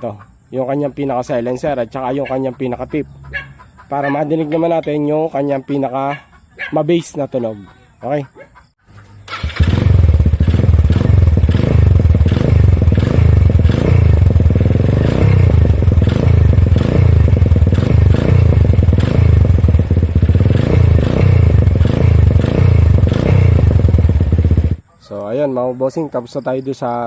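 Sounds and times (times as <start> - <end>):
motorcycle engine revving: 9.2 - 24.8
exhaust rattle: 9.3 - 24.8.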